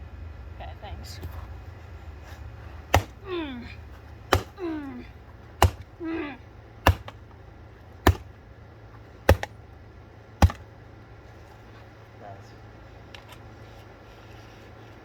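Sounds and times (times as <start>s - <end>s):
hammer striking ceiling fan: 2.9s - 3.2s, 4.3s - 4.6s, 5.6s - 5.9s, 6.9s - 7.2s, 8.0s - 8.3s, 9.3s - 9.5s, 10.4s - 10.6s
person exclaiming: 3.1s - 3.8s, 5.9s - 6.5s.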